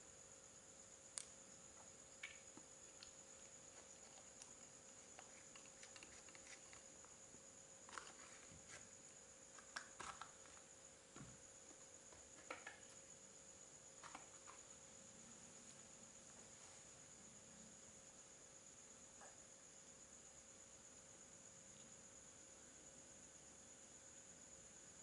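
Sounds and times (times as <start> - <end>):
faint steady hiss: 0.0 - 25.0
faint clicks and rustles: 2.2 - 13.0.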